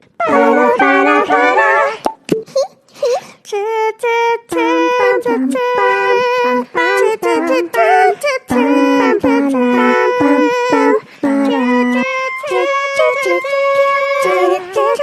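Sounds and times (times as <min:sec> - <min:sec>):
high female voice singing: 0:03.4 - 0:15.0.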